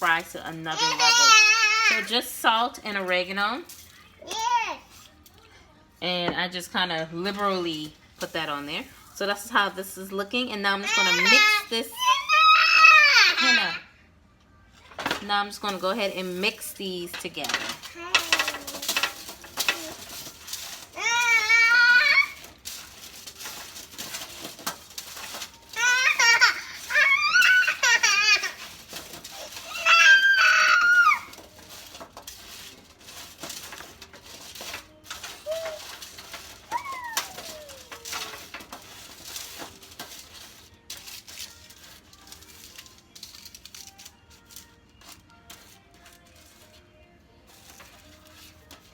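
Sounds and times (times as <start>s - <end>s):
fries tossed on baking pan: 0.0s - 4.5s, 15.0s - 46.7s
toddler whining: 0.7s - 2.1s, 10.8s - 13.8s, 17.8s - 19.0s, 20.9s - 22.5s, 25.7s - 28.7s, 29.3s - 31.4s, 35.2s - 36.0s, 36.6s - 38.2s.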